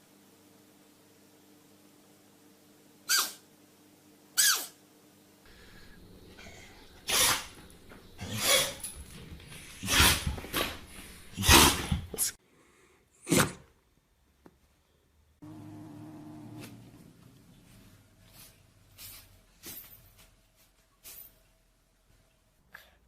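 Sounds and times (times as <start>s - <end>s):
pet sneezing: 3.1s - 3.4s, 6.4s - 7.6s, 8.2s - 9.0s, 9.8s - 12.4s
low steady hum: 5.2s - 11.4s, 15.3s - 20.7s.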